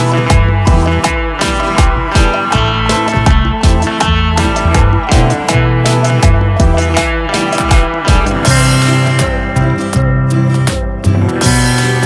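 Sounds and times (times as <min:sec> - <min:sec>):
background music with guitar: 0:00.0 - 0:12.0
steady beat: 0:00.0 - 0:12.0.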